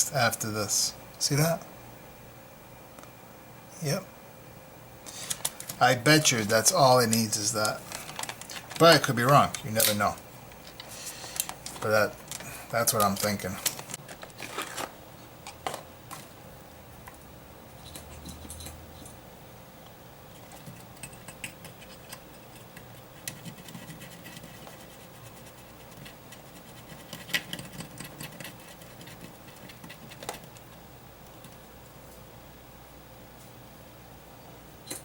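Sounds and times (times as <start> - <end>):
tools clicking and scratching: 20.3 - 30.7.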